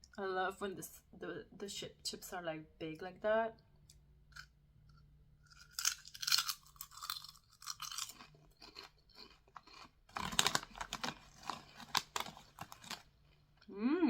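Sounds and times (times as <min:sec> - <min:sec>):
person crunching potato chips: 0:04.3 - 0:13.6.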